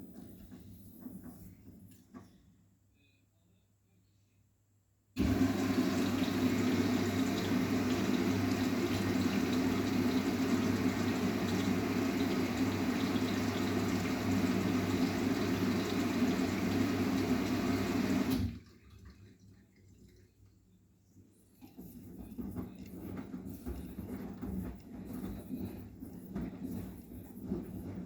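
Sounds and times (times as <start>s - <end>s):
water gushing into washing machine: 5.2s - 20.6s, 21.5s - 28.0s.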